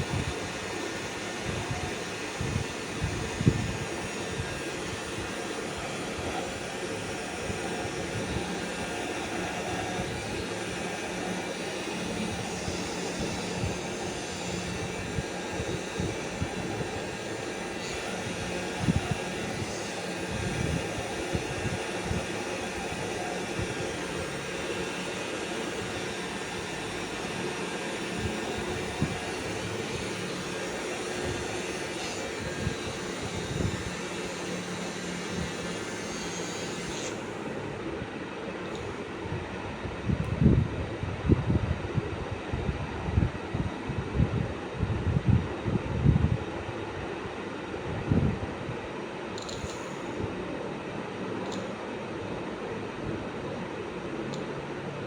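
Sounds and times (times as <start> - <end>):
motor whirring: 0.0 - 37.8, 49.4 - 50.2.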